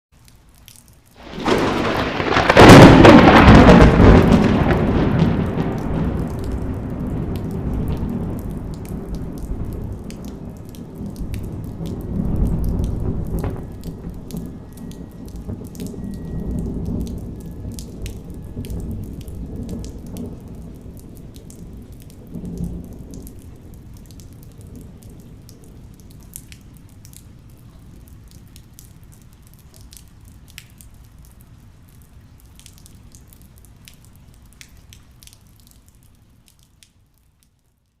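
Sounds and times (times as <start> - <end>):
water dripping: 0.1 - 1.8, 5.7 - 38.0
rain: 0.1 - 38.0
thunder rumbling: 1.2 - 28.4.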